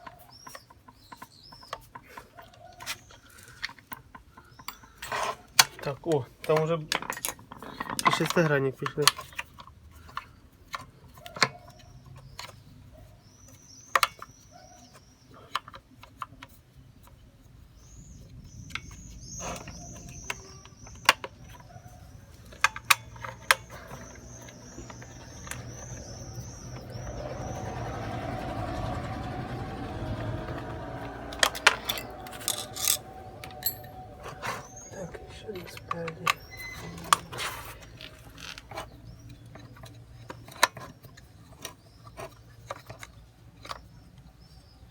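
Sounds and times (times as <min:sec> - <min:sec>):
bird chirping: 0:00.0 - 0:03.6, 0:11.0 - 0:15.5, 0:17.1 - 0:44.9
hand tools clicking on metal: 0:18.8 - 0:43.9.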